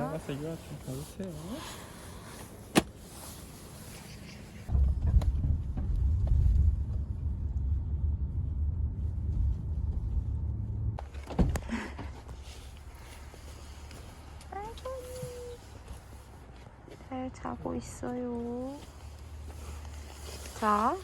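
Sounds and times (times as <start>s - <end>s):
car road rumble inside cabin: 4.6s - 11.6s.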